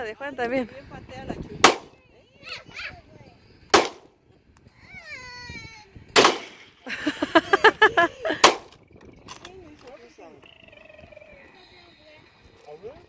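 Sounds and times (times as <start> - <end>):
rifle shots with echo: 1.6 - 2.0, 3.7 - 4.1, 6.2 - 6.8, 8.4 - 8.7.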